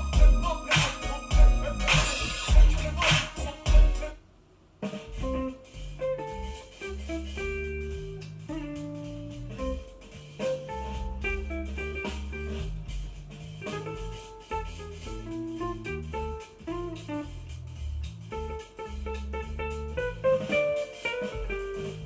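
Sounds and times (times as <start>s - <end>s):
loud musical hit: 0.0s - 4.1s
bass line: 0.0s - 4.2s, 5.1s - 22.0s
music over speakers: 0.0s - 4.2s, 18.4s - 22.0s.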